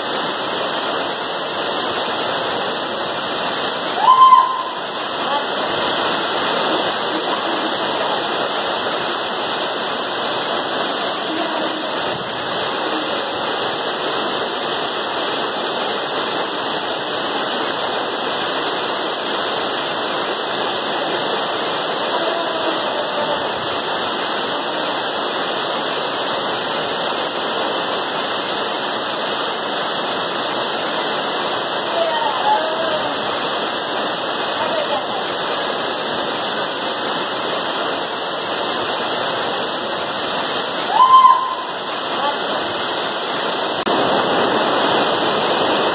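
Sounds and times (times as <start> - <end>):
waterfall rushing over rocks: 0.0 - 45.9.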